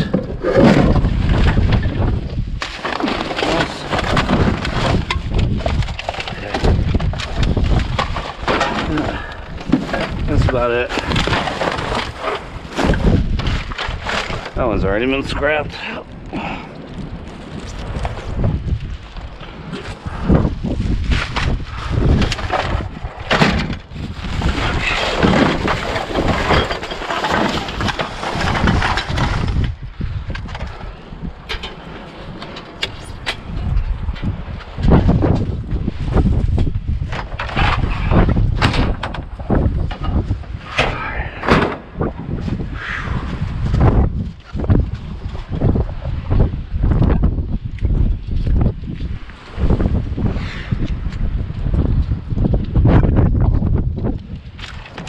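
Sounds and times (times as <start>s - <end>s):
wind buffeting microphone: 0.0s - 55.0s
junk knocking and clattering: 22.2s - 30.7s, 31.4s - 34.3s
scrap shifting in a dumpster: 22.4s - 29.7s.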